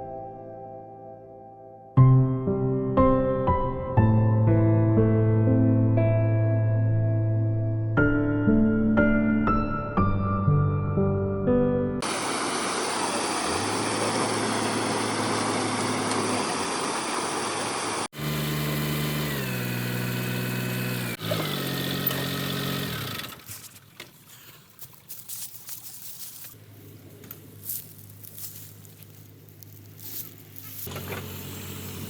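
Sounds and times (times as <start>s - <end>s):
vehicle engine rumble: 12.0s - 32.0s
faint crackling: 23.3s - 31.3s.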